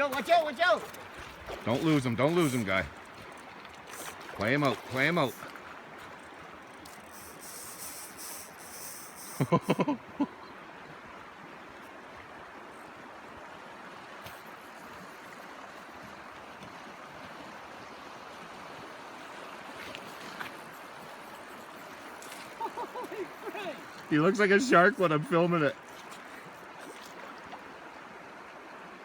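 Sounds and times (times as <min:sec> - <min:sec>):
river water flowing: 0:00.0 - 0:29.0
man exclaiming: 0:23.2 - 0:25.4.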